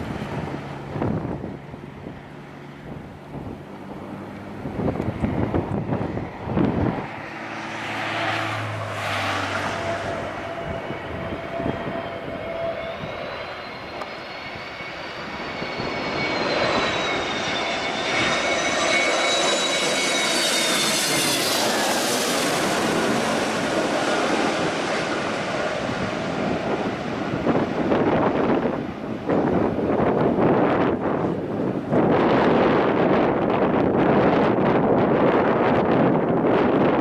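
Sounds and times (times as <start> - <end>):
airliner engines whining: 0.0 - 37.0
wind buffeting microphone: 0.0 - 37.0.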